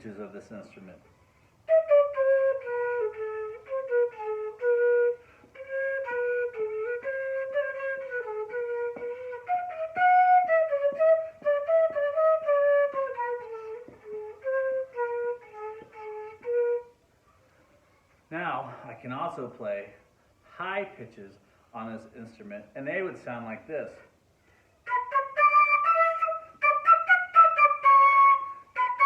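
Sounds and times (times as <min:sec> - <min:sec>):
low flute tune: 0:01.1 - 0:17.1, 0:24.8 - 0:29.0.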